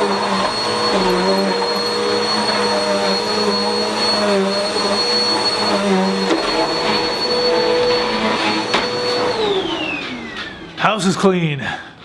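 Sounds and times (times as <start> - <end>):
vacuum cleaner running: 0.0 - 10.9.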